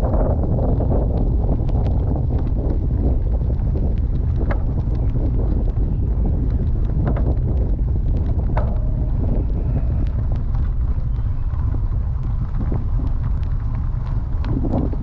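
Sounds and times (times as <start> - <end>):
wind buffeting microphone: 0.0 - 15.0
bike clicks and ticks: 0.1 - 15.0.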